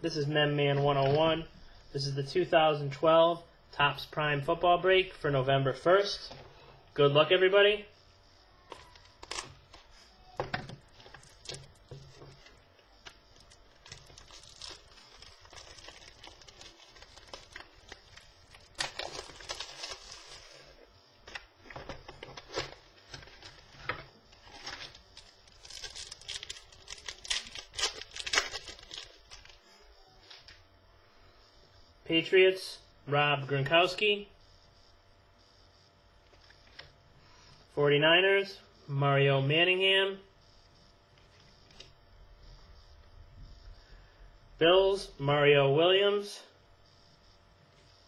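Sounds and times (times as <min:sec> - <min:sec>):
wrappers crinkling and tearing: 0:08.8 - 0:10.0, 0:10.9 - 0:20.7, 0:21.3 - 0:29.6.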